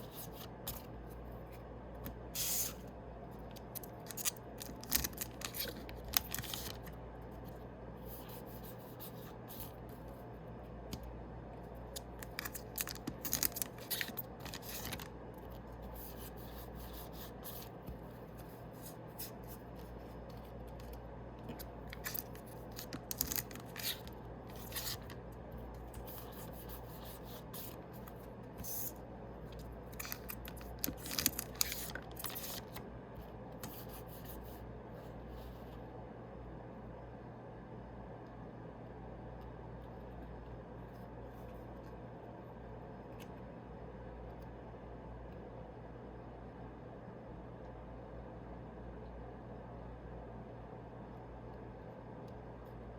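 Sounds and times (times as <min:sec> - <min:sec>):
low steady hum: 0:00.0 - 0:52.9
foil packs crinkling: 0:04.1 - 0:06.8, 0:12.2 - 0:15.1, 0:21.9 - 0:25.2, 0:29.9 - 0:32.8.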